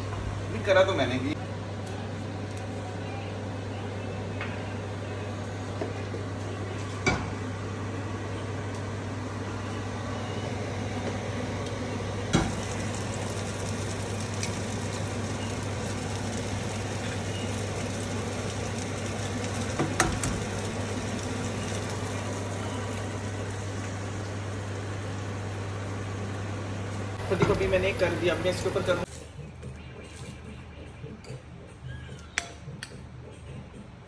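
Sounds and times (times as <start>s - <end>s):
egg sizzling in a pan: 9.6s - 29.1s.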